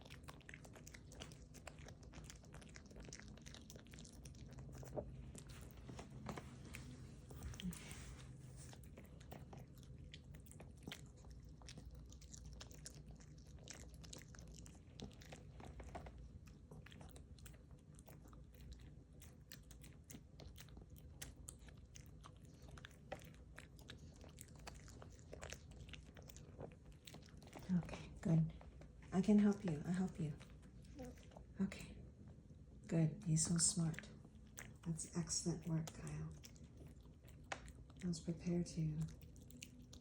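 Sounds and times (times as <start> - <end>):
dog chewing crunches: 0.0 - 27.7, 39.1 - 40.0.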